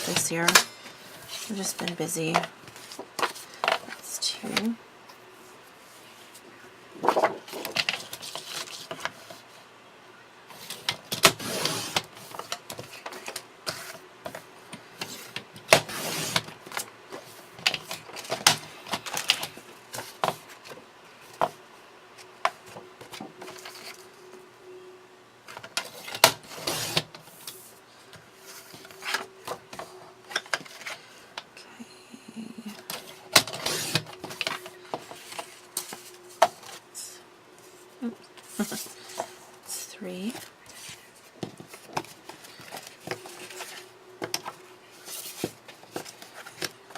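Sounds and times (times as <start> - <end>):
faint steady hum: 0.0 - 46.9
paper sliding and rustling: 7.0 - 9.4, 11.4 - 14.4, 15.0 - 16.5, 25.9 - 27.7, 33.4 - 36.8.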